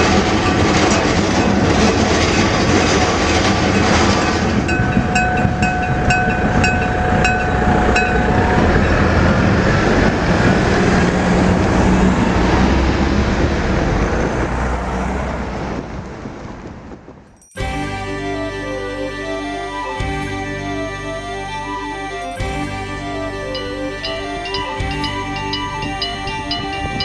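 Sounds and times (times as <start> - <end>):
electric warning bell ringing: 0.0 - 12.7, 22.2 - 27.0
train rumble with wheel clatter: 0.0 - 18.5, 22.2 - 27.0.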